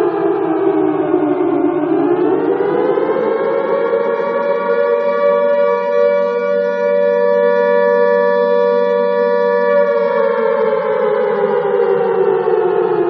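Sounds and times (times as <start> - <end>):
alarm siren: 0.0 - 13.0.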